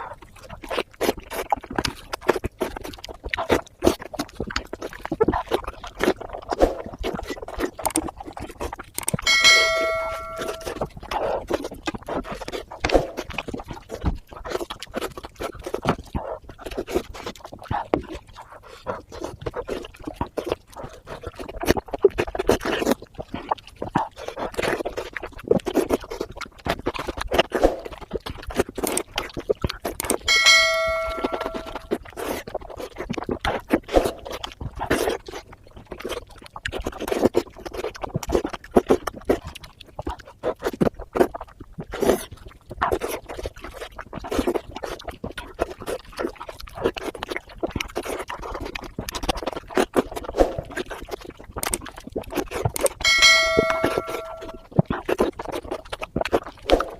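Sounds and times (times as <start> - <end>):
chewing with wet smacking: 0.0 - 56.9
bell-like ding: 9.3 - 10.8, 30.3 - 31.9, 53.0 - 54.6.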